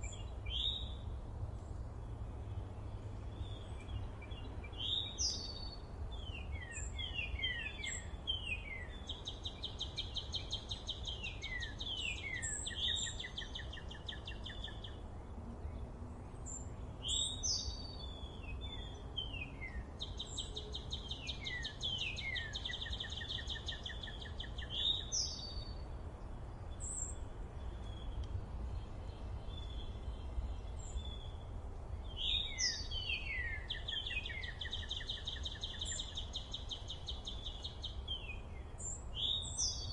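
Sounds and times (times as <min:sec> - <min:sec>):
songbird singing trills: 0:00.0 - 0:26.0, 0:26.6 - 0:39.9.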